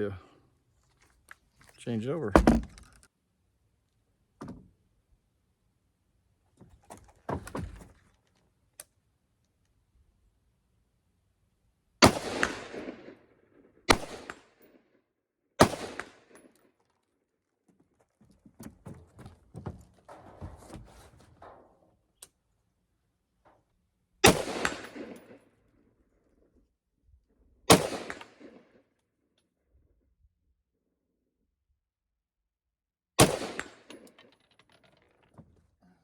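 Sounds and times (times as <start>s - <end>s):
rifle shots with echo: 12.0s - 13.2s, 13.9s - 14.6s, 15.6s - 16.4s, 24.2s - 25.4s, 27.7s - 28.7s, 33.2s - 34.0s.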